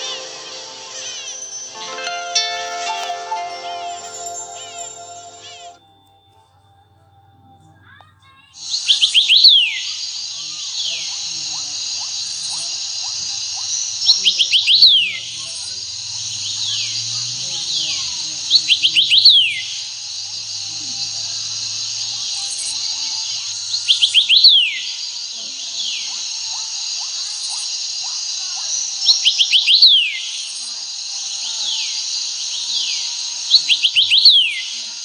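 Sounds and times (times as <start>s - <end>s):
bird chirps ringtone: 0.0s - 9.9s
cricket-like hiss: 8.6s - 35.0s.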